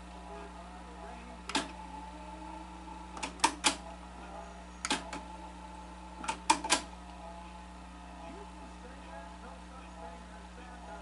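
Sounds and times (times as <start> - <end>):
low steady hum: 0.0 - 11.0
sharp mechanical clicks: 1.5 - 1.8, 3.2 - 3.8, 6.2 - 6.9.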